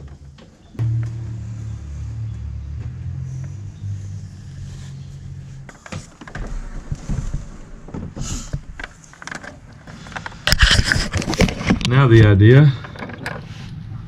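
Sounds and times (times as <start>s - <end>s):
low steady hum: 0.0s - 10.4s.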